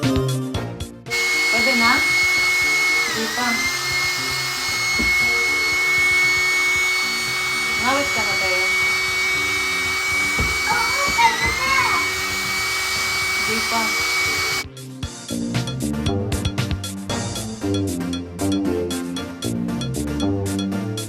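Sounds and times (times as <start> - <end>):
electric air pump whining: 1.1 - 14.6.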